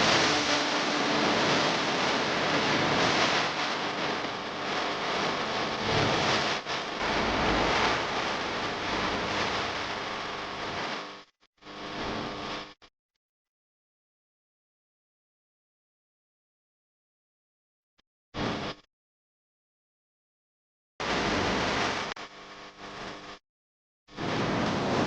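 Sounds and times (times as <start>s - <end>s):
steady rushing noise: 0.0s - 11.1s.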